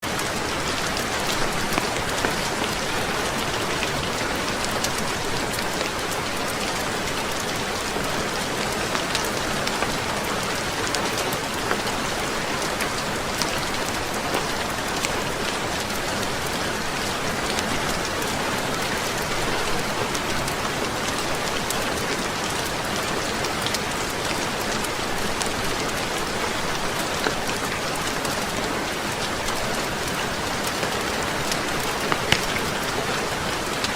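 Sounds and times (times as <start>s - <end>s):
heavy rain falling: 0.0s - 33.9s.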